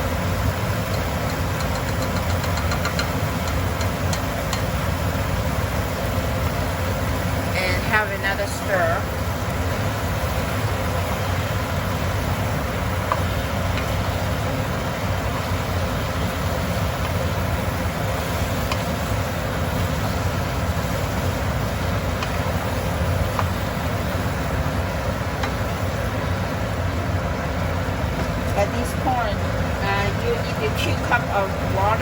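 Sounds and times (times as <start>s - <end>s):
spoon clicking against pot: 0.9s - 4.7s.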